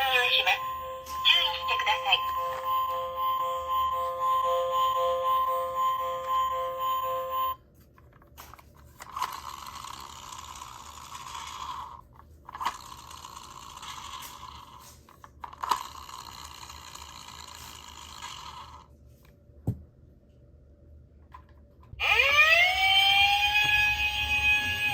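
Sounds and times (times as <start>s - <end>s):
music jingle: 0.0s - 7.6s
toy car mechanism whirring: 8.1s - 18.9s, 22.0s - 24.9s.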